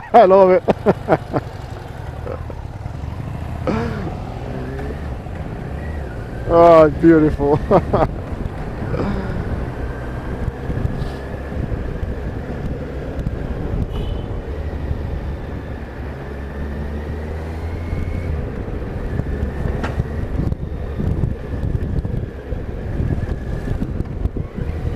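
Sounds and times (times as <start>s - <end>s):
vehicle engines on road: 0.0s - 24.9s
wind buffeting microphone: 7.2s - 16.0s, 17.9s - 24.9s.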